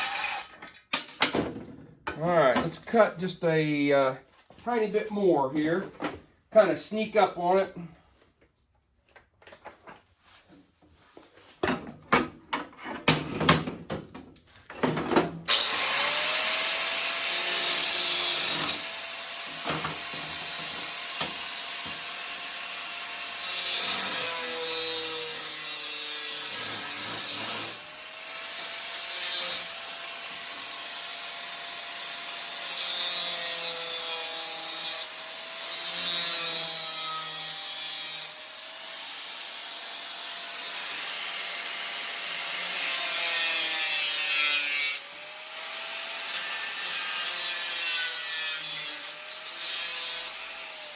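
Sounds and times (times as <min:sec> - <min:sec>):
power cutting tool whine: 0:00.0 - 0:00.5, 0:15.5 - 0:36.8.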